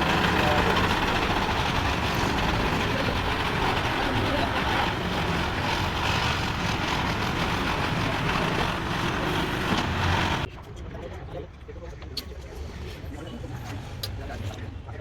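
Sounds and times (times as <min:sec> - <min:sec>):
tractor engine running: 0:00.0 - 0:10.5.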